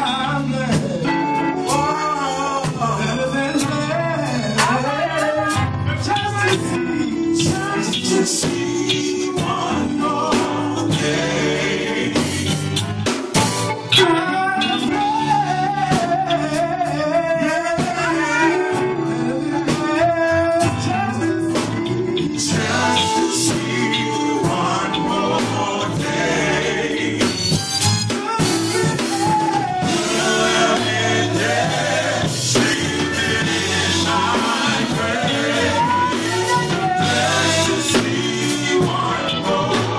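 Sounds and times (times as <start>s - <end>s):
gospel song with band: 0.0s - 39.9s.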